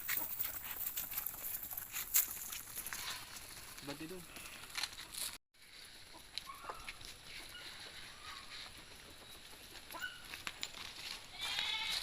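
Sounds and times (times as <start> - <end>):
faint farm animal calls: 6.0 - 10.4, 11.2 - 12.0.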